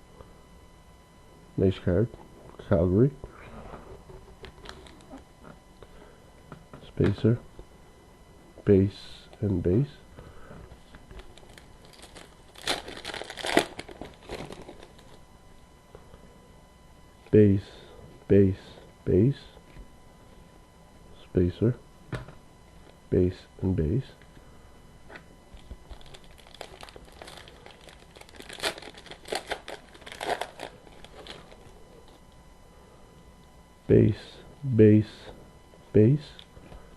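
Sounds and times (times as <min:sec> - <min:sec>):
wrapper crinkling and tearing: 0:11.2 - 0:15.2, 0:25.6 - 0:31.7.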